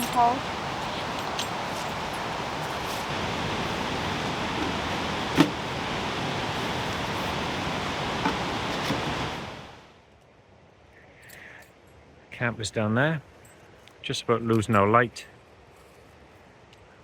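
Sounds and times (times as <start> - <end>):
waterfall rushing: 0.0 - 9.9.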